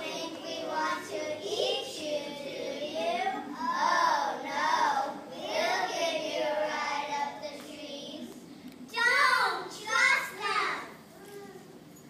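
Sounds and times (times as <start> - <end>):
children singing: 0.0 - 7.6.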